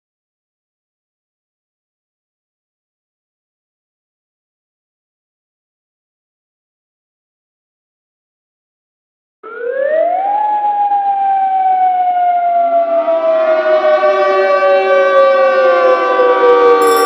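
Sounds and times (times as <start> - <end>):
civil defense siren: 9.4 - 16.9.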